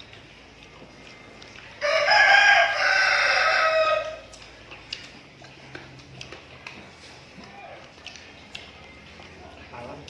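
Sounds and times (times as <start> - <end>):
rooster crowing: 1.8 - 4.3.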